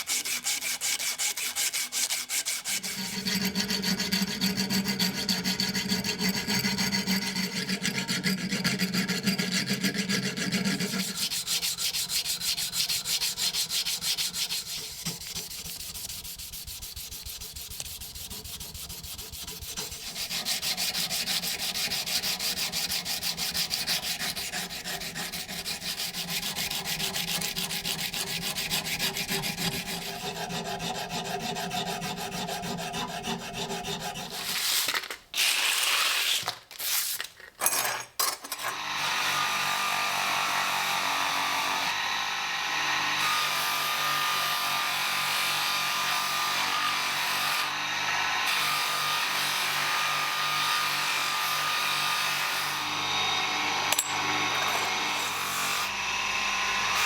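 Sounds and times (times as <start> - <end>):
sanding wood: 0.0 - 34.7.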